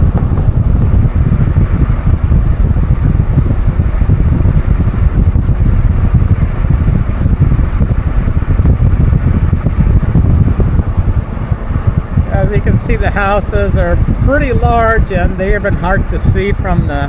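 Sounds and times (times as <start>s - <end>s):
rumbling road noise: 0.0s - 17.0s
wind buffeting microphone: 0.0s - 17.0s.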